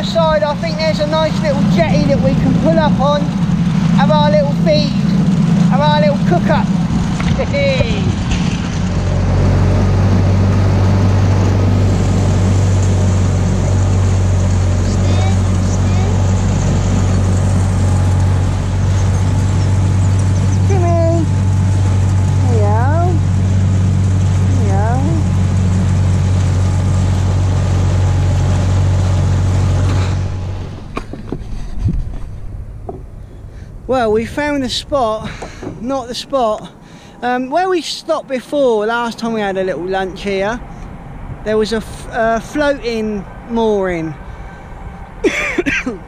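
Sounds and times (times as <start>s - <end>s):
rushing water noise: 0.0s - 33.0s
outboard motor running: 0.0s - 35.8s.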